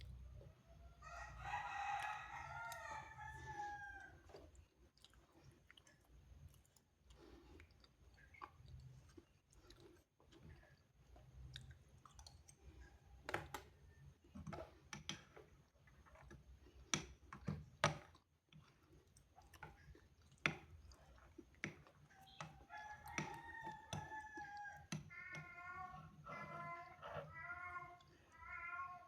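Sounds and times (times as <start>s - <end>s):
rooster crowing: 0.8s - 4.2s, 22.6s - 24.9s.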